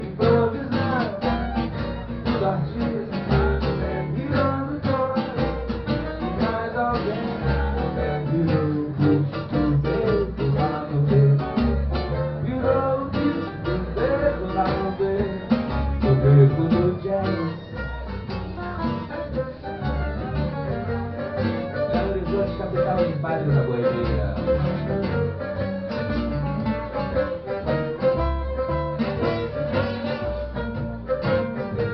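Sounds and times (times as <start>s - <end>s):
guitar-led band music: 0.0s - 31.9s
low bass notes: 0.0s - 31.9s.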